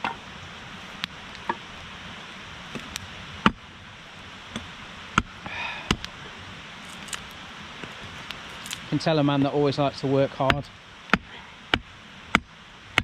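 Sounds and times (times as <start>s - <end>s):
axe chopping firewood: 4.5s - 6.1s, 10.4s - 13.0s.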